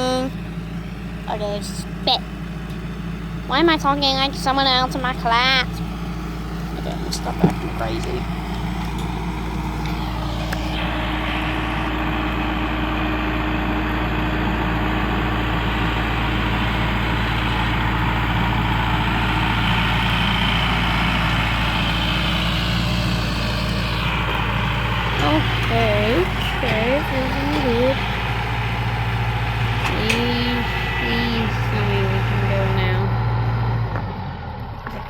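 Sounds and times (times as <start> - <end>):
tractor engine running: 0.0 - 35.0.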